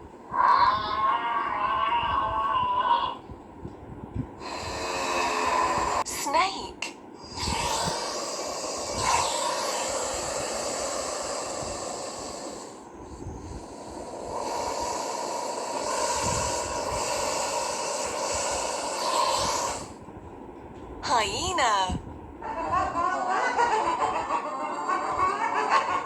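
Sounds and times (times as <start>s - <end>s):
snake hissing: 4.4s - 6.1s, 7.2s - 20.0s.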